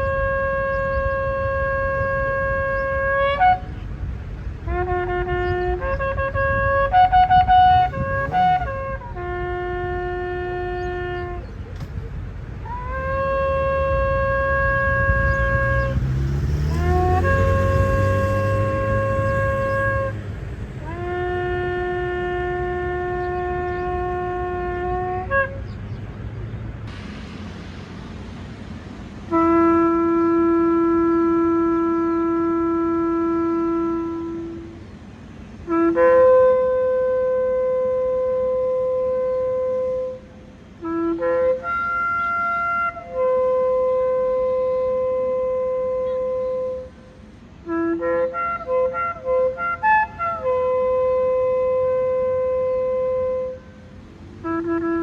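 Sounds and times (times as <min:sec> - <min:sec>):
shofar blasts: 0:00.0 - 0:04.0, 0:04.6 - 0:25.7, 0:29.3 - 0:34.9, 0:35.6 - 0:55.0.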